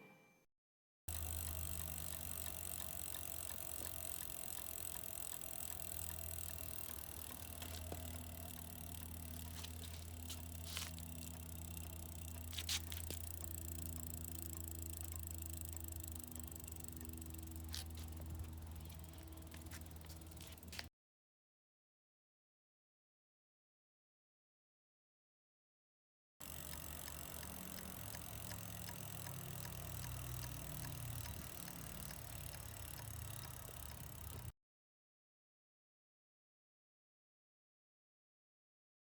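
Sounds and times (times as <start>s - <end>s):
bicycle wheel humming: 1.1s - 20.9s, 26.4s - 34.5s
sharp clicks from bicycle wheel: 1.1s - 20.9s, 26.4s - 34.5s.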